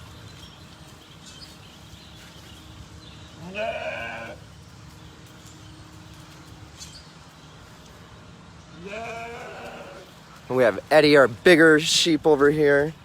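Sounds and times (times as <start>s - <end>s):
sheep bleating: 3.4s - 4.4s, 8.8s - 10.1s.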